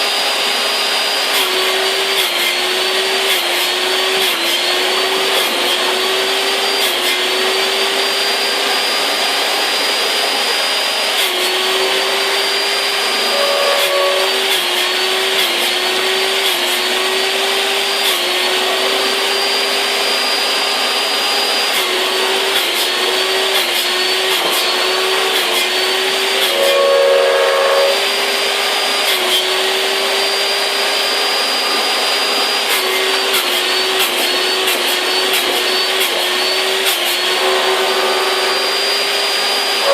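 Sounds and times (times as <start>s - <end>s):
electric saw motor whining: 0.0s - 39.9s.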